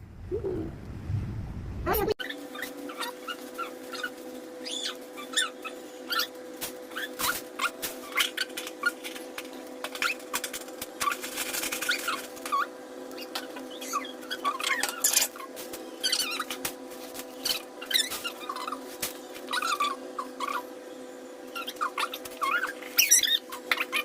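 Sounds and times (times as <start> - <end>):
steady hum: 0.0 - 24.0
small animal whimpering: 1.9 - 9.0, 19.5 - 20.7.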